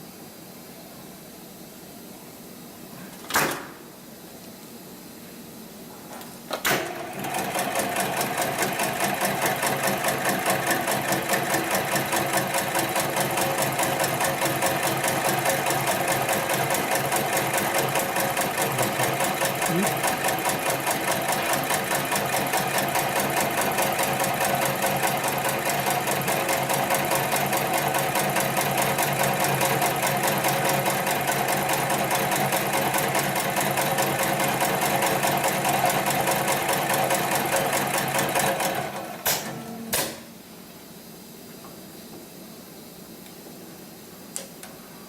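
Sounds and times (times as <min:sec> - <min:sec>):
sewing machine stitching: 0:06.7 - 0:39.6.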